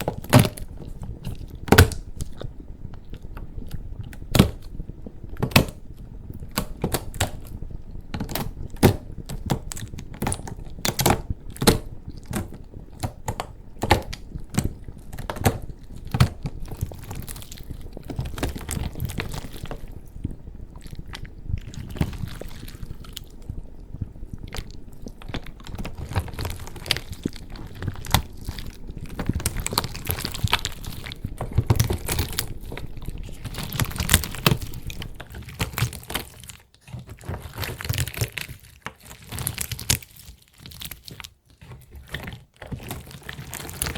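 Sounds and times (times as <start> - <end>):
crisp crackling: 0.0 - 43.9
soft squishy rustle: 0.0 - 43.9
slime cracking under hands: 24.5 - 36.5.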